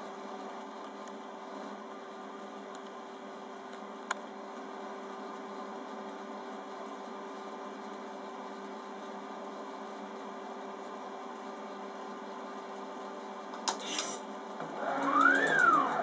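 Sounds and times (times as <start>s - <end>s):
small electric motor humming: 14.6s - 16.0s.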